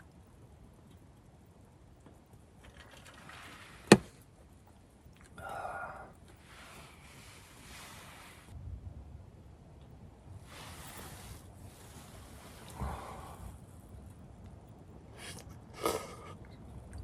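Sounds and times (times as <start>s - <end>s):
soft rustling and handling noise: 0.0s - 8.6s, 10.4s - 15.6s
loud rustle or scrape: 2.6s - 4.2s, 6.4s - 8.6s, 10.4s - 12.8s.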